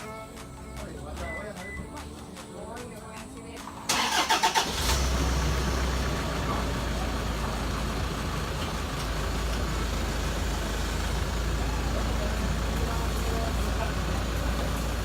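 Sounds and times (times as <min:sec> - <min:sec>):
car engine idling: 0:03.9 - 0:15.0.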